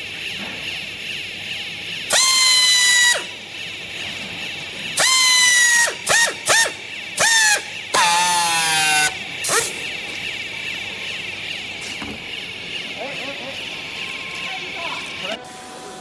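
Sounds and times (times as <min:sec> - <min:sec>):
baling machine humming: 0:00.0 - 0:16.0
high-pitched machine squeals: 0:02.1 - 0:03.4, 0:05.0 - 0:09.8, 0:12.6 - 0:16.0.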